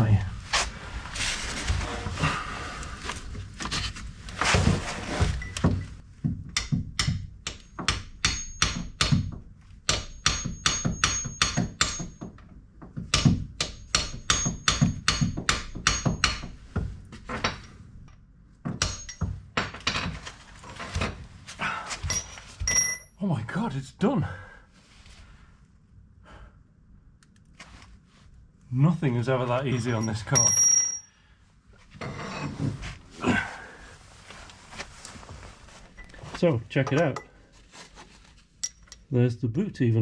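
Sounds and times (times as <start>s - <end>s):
hammer striking a punch: 6.5s - 9.3s, 9.9s - 12.2s.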